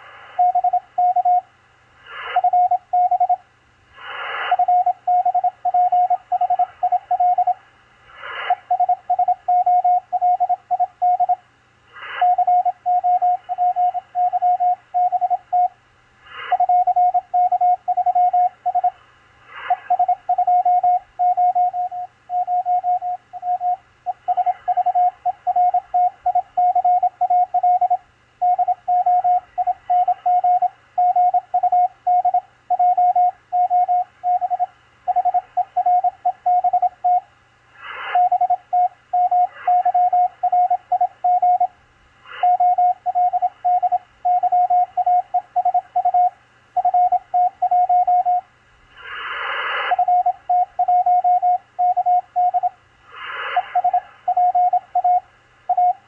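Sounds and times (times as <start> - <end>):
radio hiss: 0.0 - 5.0, 6.8 - 8.8, 11.8 - 14.2, 37.6 - 40.8, 41.6 - 51.1, 52.4 - 56.0
morse code tone: 20.0 - 37.2, 42.4 - 48.4, 50.0 - 52.7
short noise bursts: 37.7 - 52.1, 53.0 - 56.0.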